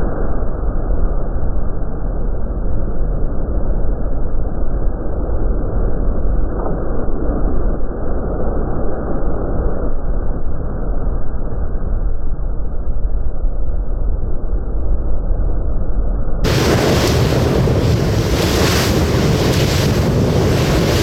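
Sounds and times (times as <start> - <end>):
wind noise: 0.0 - 21.0
boat engine rumble: 16.4 - 21.0
water rushing: 16.4 - 21.0.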